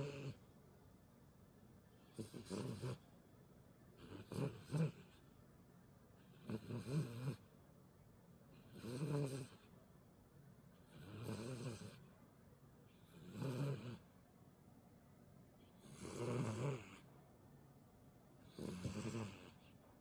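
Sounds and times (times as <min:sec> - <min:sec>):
dog snoring: 0:00.0 - 0:00.5, 0:01.9 - 0:03.1, 0:04.0 - 0:05.3, 0:06.2 - 0:07.5, 0:08.5 - 0:09.7, 0:10.8 - 0:12.2, 0:12.9 - 0:14.2, 0:15.7 - 0:17.1, 0:18.4 - 0:19.9.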